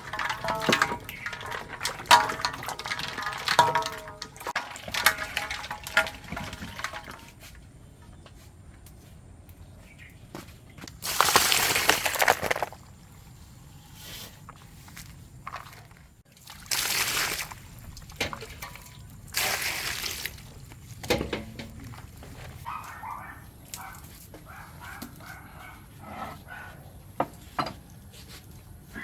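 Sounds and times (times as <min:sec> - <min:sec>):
water pouring and sloshing: 0:00.0 - 0:07.8, 0:10.9 - 0:12.8, 0:14.8 - 0:24.3.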